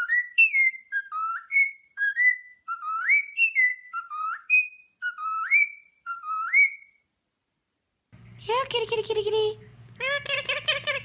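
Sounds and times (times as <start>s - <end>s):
parrot whistling: 0.0s - 7.0s.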